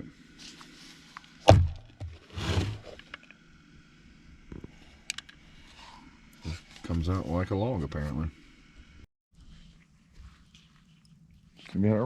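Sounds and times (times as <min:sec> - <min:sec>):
soft thump: 0:01.5 - 0:02.2.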